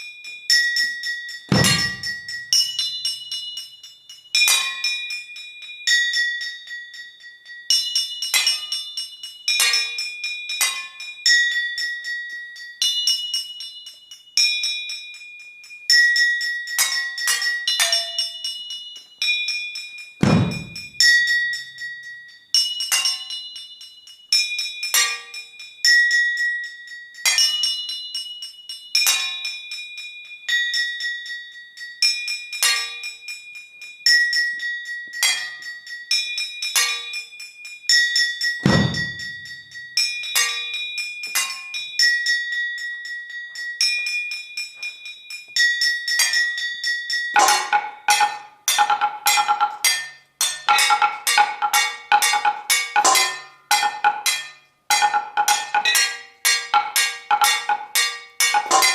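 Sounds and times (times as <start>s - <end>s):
deep thud: 1.5s - 2.2s, 20.2s - 21.0s, 38.7s - 39.5s
ringing metal strikes: 1.5s - 3.5s, 20.2s - 21.8s, 38.6s - 41.7s, 47.4s - 58.9s.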